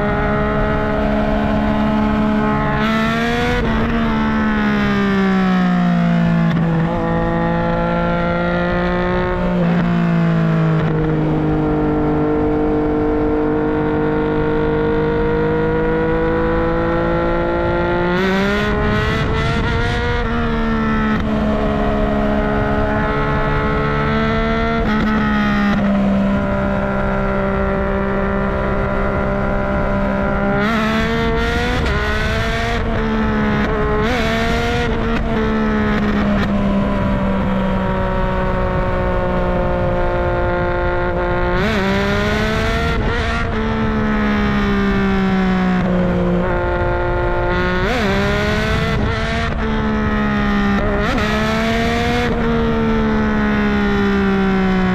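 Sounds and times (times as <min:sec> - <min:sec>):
motorcycle engine and exhaust: 0:00.0 - 0:54.9.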